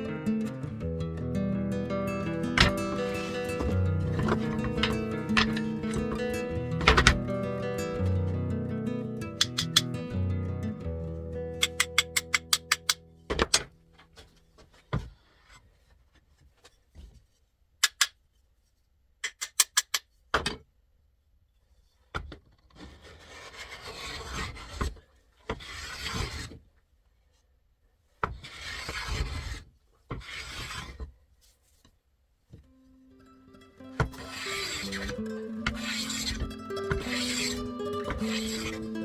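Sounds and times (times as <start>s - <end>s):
hand tool scraping wood: 2.3s - 8.2s, 9.3s - 10.0s, 22.6s - 26.6s, 28.3s - 31.8s, 33.8s - 39.0s
sharp clicks and taps: 9.4s - 9.9s, 11.6s - 13.0s.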